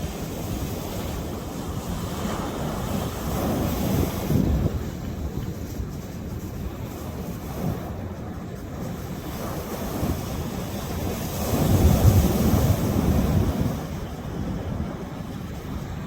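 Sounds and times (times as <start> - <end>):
sea waves breaking: 0.0 - 16.0
wind buffeting microphone: 0.0 - 16.0.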